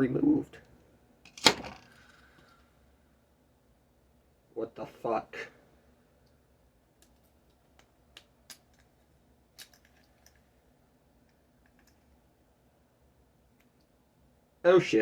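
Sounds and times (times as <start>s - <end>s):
small clicks and light taps: 7.0s - 10.5s, 11.2s - 12.2s.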